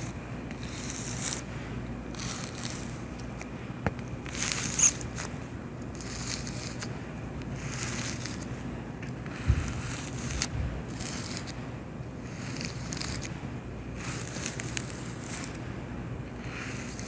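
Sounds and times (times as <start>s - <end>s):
cockroaches scratching and rustling: 0.0s - 1.5s, 2.1s - 3.5s, 4.2s - 8.5s, 9.2s - 11.6s, 12.2s - 13.3s, 13.9s - 15.6s, 16.3s - 17.0s
steady low hum: 0.0s - 17.0s.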